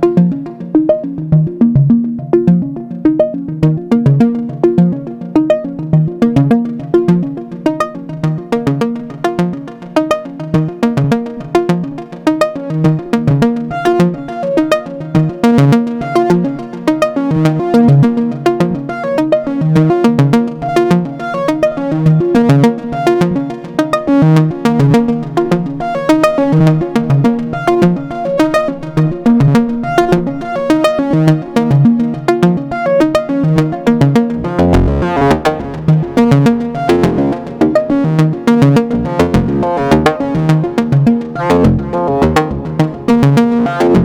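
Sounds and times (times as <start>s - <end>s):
plucked synth notes sequence: 33.4s - 44.0s.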